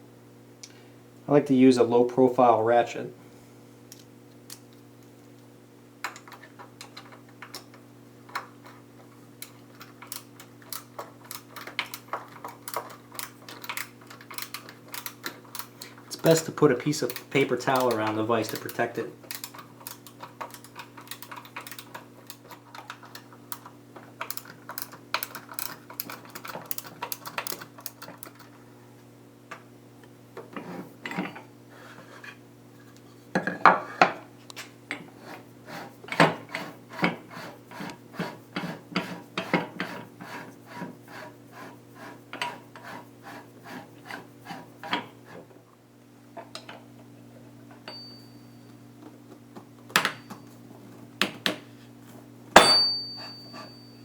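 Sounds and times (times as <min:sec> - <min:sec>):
ratchet wrench clicking: 0:17.0 - 0:21.9.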